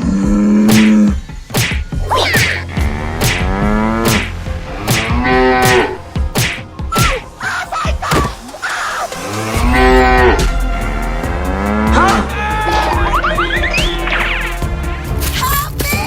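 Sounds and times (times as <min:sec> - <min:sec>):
sharp hits: 0:00.6 - 0:07.4
cattle mooing: 0:04.8 - 0:06.0, 0:09.3 - 0:10.5.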